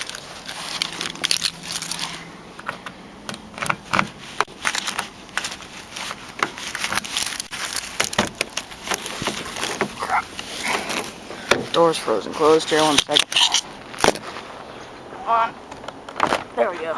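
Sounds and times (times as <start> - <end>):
footsteps crunching in snow: 13.8 - 14.7.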